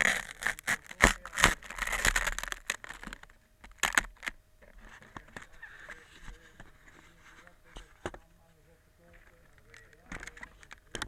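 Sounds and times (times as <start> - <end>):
rustling: 0.0 - 11.0
sharp clicks and knocks: 9.1 - 11.0.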